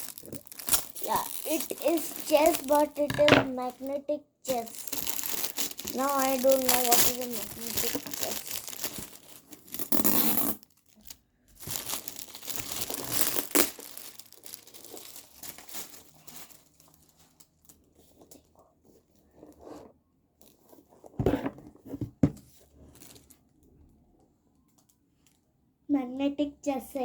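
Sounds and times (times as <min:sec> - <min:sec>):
packaging crinkling and tearing: 0:00.0 - 0:18.4, 0:22.8 - 0:23.4.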